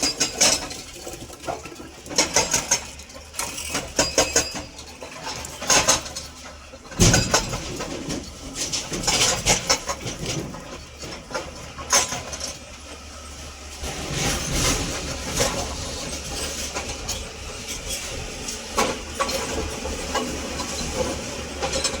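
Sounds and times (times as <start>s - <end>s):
heavy machine engine rumble: 0.0s - 22.0s
sharp metal knocks and clanks: 2.2s - 6.3s, 6.9s - 10.6s.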